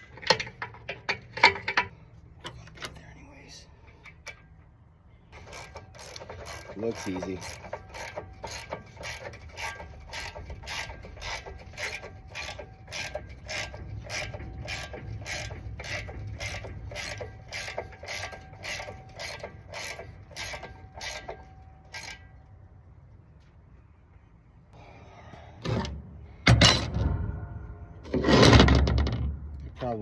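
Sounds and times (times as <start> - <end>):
ratchet wrench clicking: 5.4 - 22.2.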